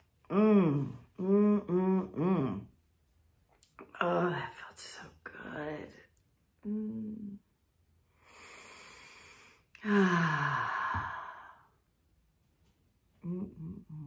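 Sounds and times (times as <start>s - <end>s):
person sighing: 0.3s - 2.6s, 9.8s - 11.7s
person breathing in: 8.2s - 11.8s.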